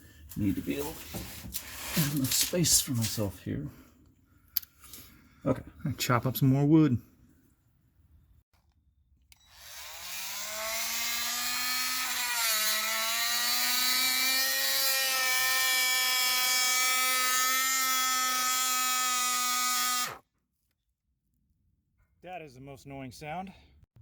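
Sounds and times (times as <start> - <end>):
electric saw cutting wood: 9.4 - 20.2.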